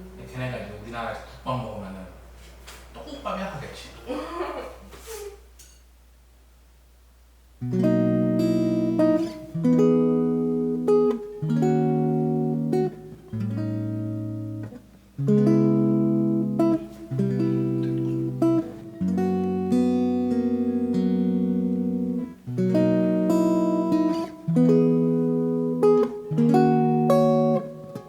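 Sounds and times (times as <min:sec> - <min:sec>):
plucked acoustic guitar chords: 0:07.6 - 0:28.0.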